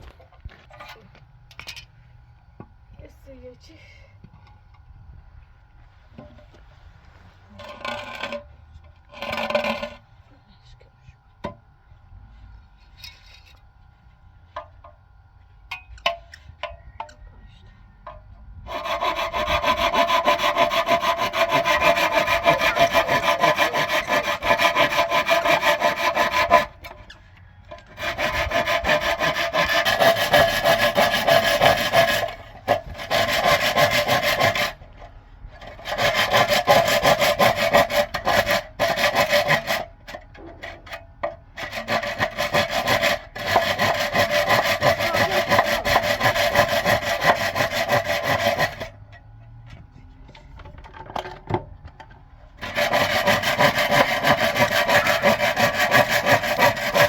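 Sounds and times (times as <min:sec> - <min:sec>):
wood being sawn: 0:07.4 - 0:08.4, 0:09.0 - 0:10.0, 0:18.6 - 0:35.0, 0:35.6 - 0:49.0, 0:52.6 - 0:57.0.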